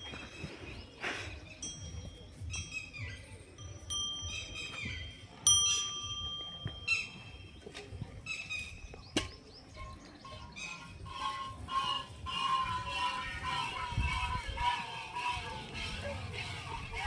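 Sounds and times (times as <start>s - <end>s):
birds chirping: 0.0s - 5.8s, 6.7s - 17.0s
whistled bird notes: 6.8s - 16.7s.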